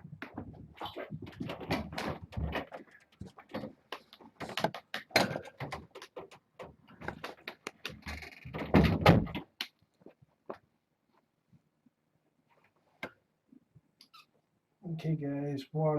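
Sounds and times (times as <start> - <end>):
door knocking and rattling: 0.3 - 3.8, 4.4 - 9.5.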